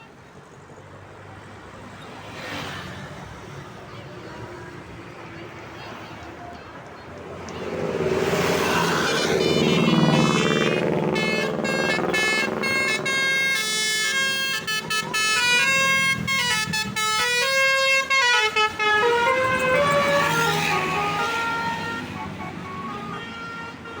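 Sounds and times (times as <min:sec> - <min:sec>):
musical air horn playing a tune: 0:07.8 - 0:24.0.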